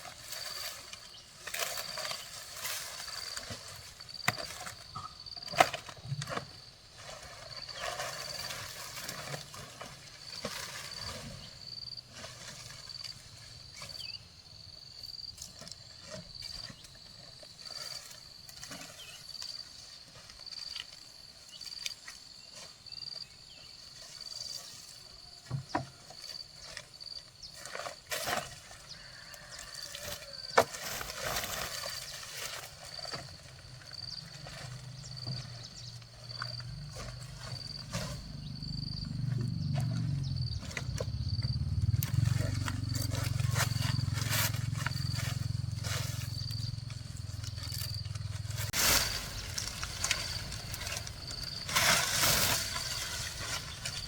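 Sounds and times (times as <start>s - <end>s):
high insect chirp: 0.0s - 54.0s
knocks and scrapes: 27.6s - 54.0s.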